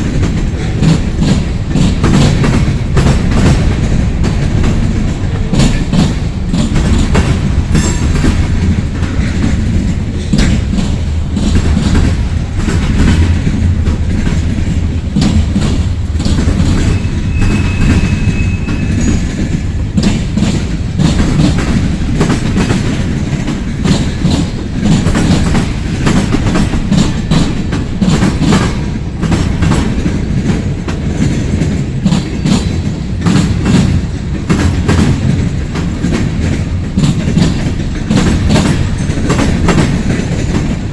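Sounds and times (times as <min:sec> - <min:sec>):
freight train rumbling past: 0:00.0 - 0:40.9
wheels clicking over rail joints: 0:00.0 - 0:40.9
faint high squeal: 0:16.9 - 0:19.3.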